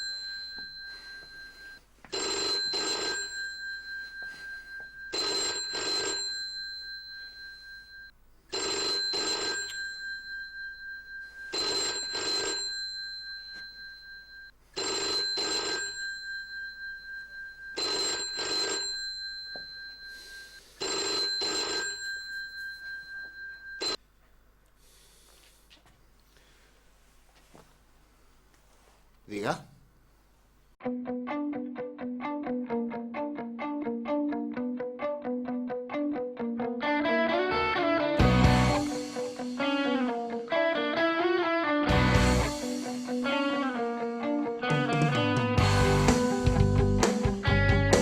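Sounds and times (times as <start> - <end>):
telephone ringing: 0.0 - 24.0, 38.2 - 47.1.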